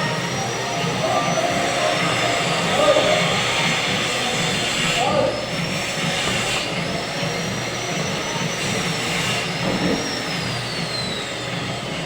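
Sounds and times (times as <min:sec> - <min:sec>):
welding arc buzzing hiss: 0:00.0 - 0:07.7, 0:08.6 - 0:11.3.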